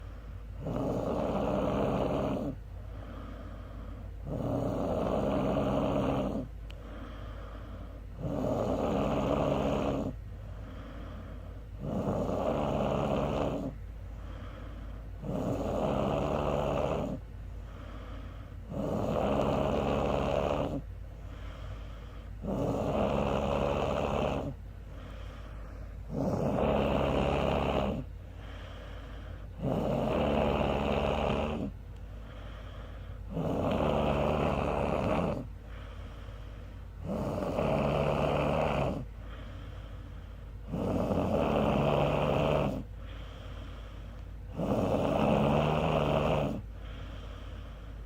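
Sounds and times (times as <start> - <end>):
woman snoring loudly: 0.6 - 2.6, 4.2 - 6.5, 8.2 - 10.2, 11.8 - 13.8, 15.2 - 17.2, 18.7 - 20.8, 22.4 - 24.6, 26.1 - 28.1, 29.6 - 31.7, 33.3 - 35.5, 37.0 - 39.1, 40.6 - 42.9, 44.5 - 46.7.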